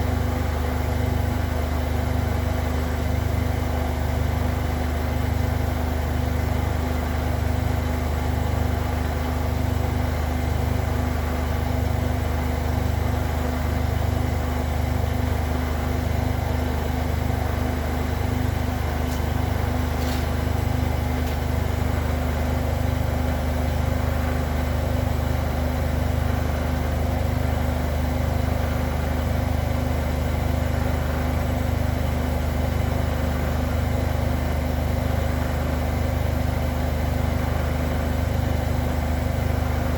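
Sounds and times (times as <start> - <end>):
washing machine spinning: 0.0 - 39.9.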